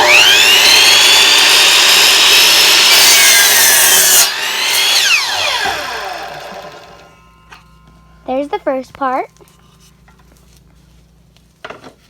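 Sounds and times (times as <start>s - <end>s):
electric saw cutting wood: 0.0s - 7.6s
saw blade spinning down: 0.0s - 8.6s.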